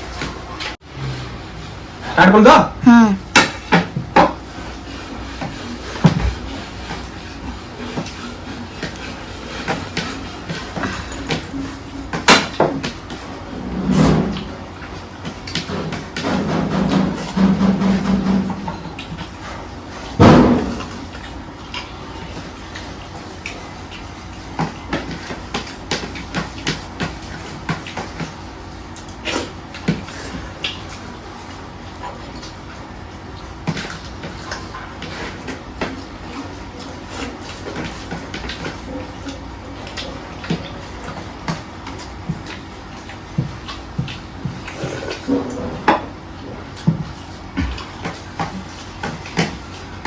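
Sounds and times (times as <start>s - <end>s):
eating sounds: 4.4s - 13.4s, 18.5s - 50.0s.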